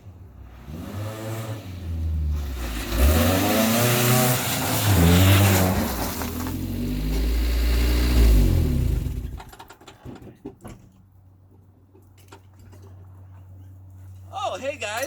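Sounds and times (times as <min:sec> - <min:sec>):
engine revving: 0:00.6 - 0:09.5.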